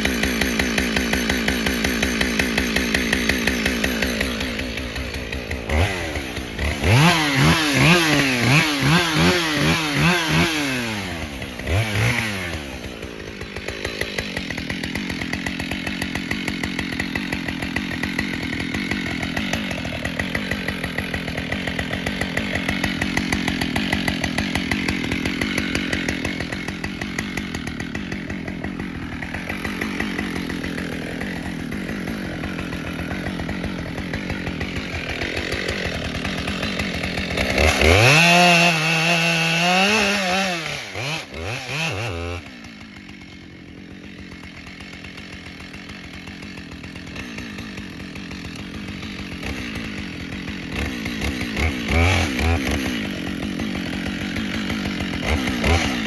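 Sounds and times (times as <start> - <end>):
chainsaw revving: 0.0 - 56.0.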